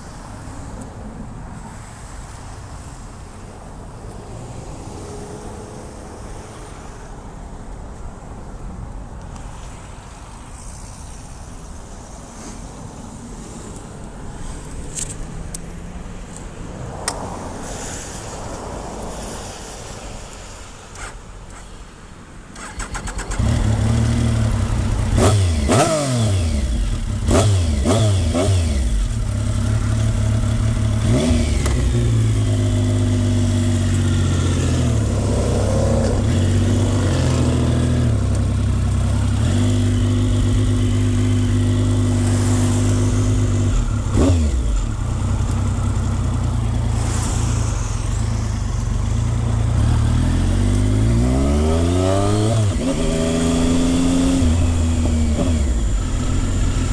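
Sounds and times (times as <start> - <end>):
motorcycle engine revving: 22.6 - 56.9.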